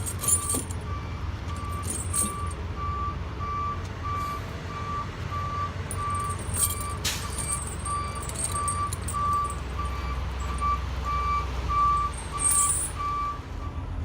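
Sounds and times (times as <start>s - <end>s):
tire chain clinking: 0.0s - 0.8s, 1.5s - 2.6s, 5.8s - 10.8s, 11.7s - 13.2s.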